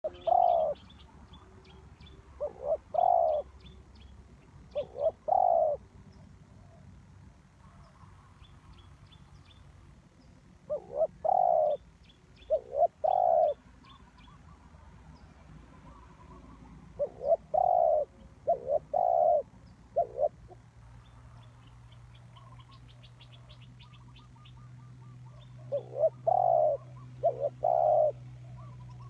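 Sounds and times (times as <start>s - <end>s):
dove cooing: 0.0s - 1.6s, 2.2s - 3.6s, 4.7s - 5.9s, 10.6s - 11.8s, 12.4s - 13.8s, 15.7s - 20.6s, 23.8s - 29.0s.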